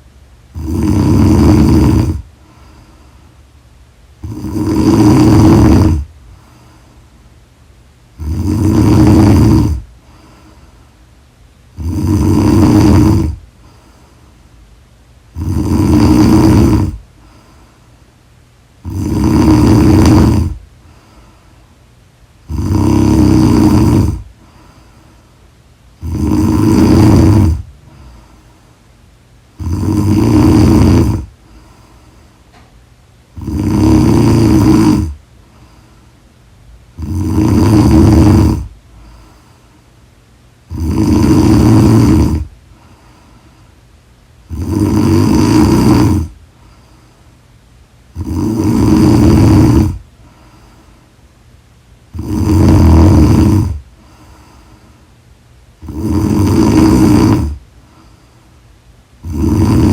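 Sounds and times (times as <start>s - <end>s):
woman snoring: 0.5s - 2.3s, 4.2s - 6.2s, 8.2s - 10.4s, 11.7s - 13.8s, 15.3s - 17.4s, 18.8s - 20.6s, 22.4s - 24.6s, 26.0s - 28.3s, 29.6s - 31.9s, 33.3s - 35.2s, 36.9s - 39.2s, 40.7s - 42.5s, 44.5s - 46.4s, 48.1s - 50.0s, 52.1s - 54.7s, 55.8s - 58.0s, 59.2s - 59.9s.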